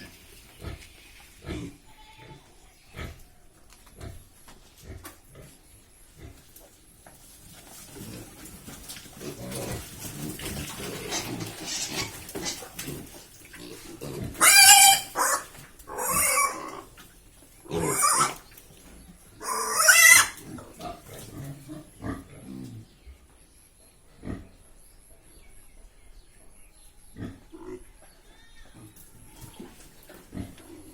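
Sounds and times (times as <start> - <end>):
pigs grunting: 0.0 - 3.3, 7.8 - 18.5, 19.4 - 22.9, 24.1 - 24.7, 27.1 - 28.0, 28.8 - 30.9
pig high-pitched squeals: 11.0 - 12.8, 14.0 - 16.9, 17.7 - 18.4, 19.4 - 20.6.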